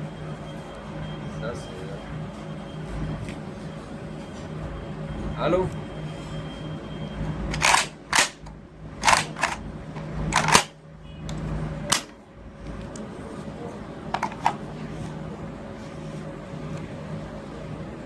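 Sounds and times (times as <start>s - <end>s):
rifle action metallic clicks: 7.5s - 9.6s, 10.3s - 10.8s, 11.9s - 12.2s.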